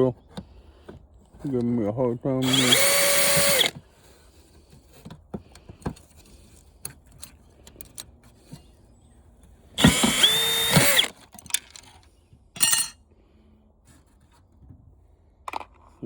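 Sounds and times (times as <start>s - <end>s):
cordless drill motor running: 2.4s - 3.8s, 9.8s - 11.2s.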